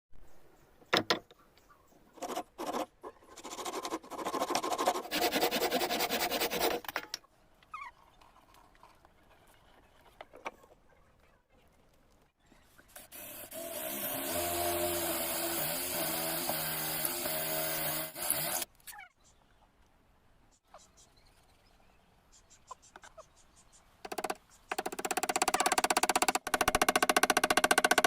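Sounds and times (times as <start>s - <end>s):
fast rough scratching: 2.2s - 6.9s.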